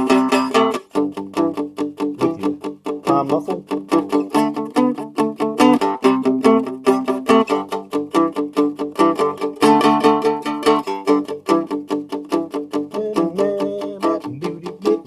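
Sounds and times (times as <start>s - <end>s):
strummed dulcimer blues: 0.0s - 1.0s, 2.1s - 15.0s.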